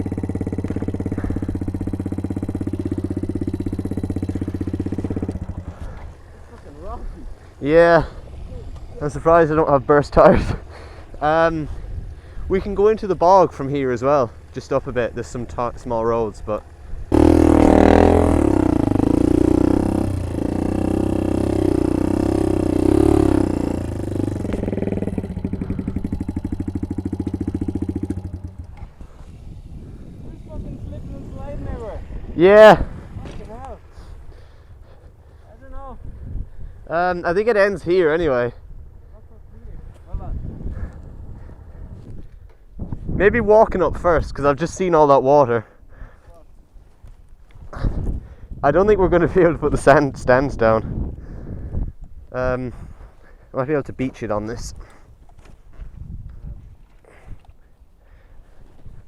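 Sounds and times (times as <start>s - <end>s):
small motorbike engine idling: 0.0s - 36.2s.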